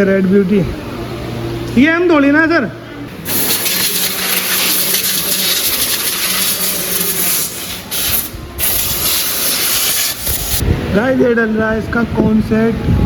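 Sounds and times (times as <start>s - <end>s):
hissing spray from a nozzle: 3.2s - 10.6s.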